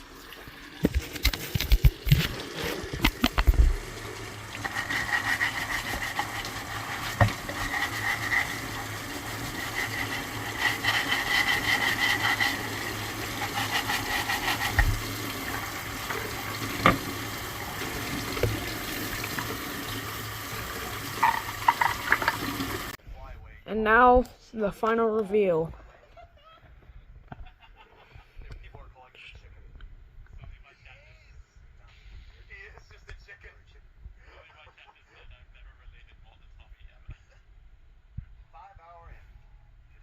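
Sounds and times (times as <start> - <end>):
tap water running into sink: 0.0 - 23.0
scrub brush scrubbing: 0.8 - 23.0.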